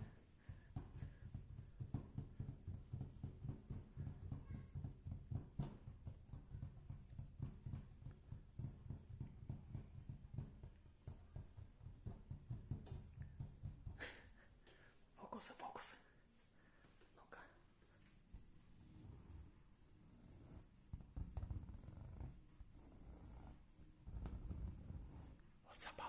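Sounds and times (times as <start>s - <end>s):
fingertip tapping on a surface: 0.0s - 14.9s.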